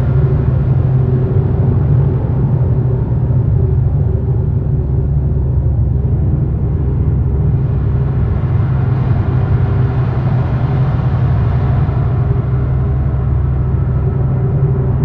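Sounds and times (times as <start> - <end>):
low rumbling drone: 0.0 - 15.0.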